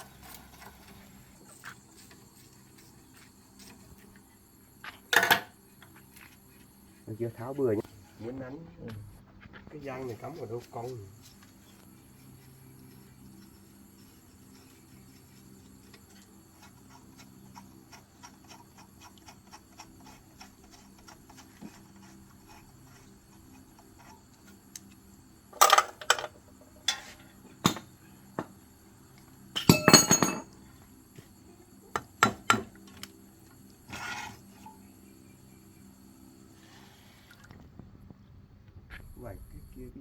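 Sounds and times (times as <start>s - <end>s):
metallic clanks of tools on metal: 29.6s - 30.5s.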